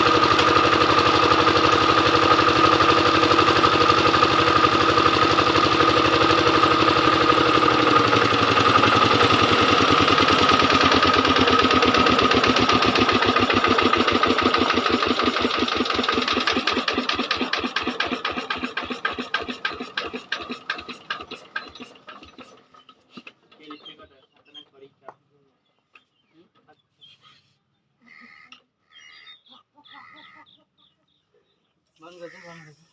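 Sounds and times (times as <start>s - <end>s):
diesel generator engine running: 0.0s - 24.9s.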